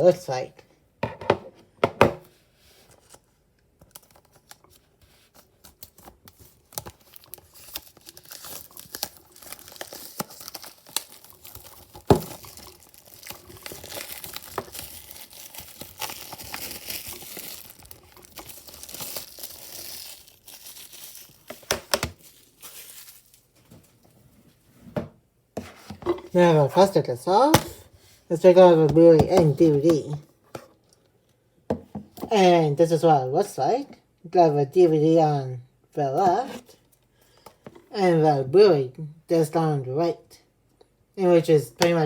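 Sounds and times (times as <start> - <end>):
shrink-wrap crinkling: 3.8 - 24.2
plastic tearing: 5.6 - 24.0.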